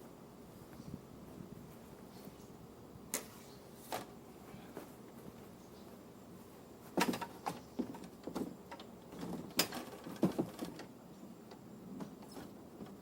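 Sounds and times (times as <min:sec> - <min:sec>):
knocks and clunks of handled gear: 0:07.0 - 0:10.9.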